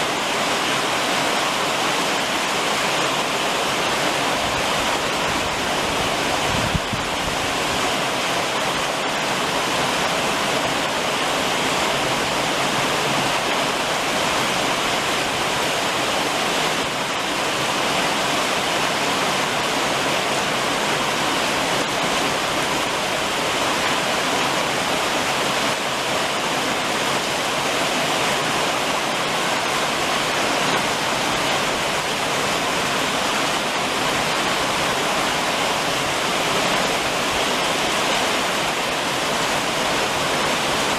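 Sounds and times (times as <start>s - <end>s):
heavy rain on a roof: 0.0s - 40.9s.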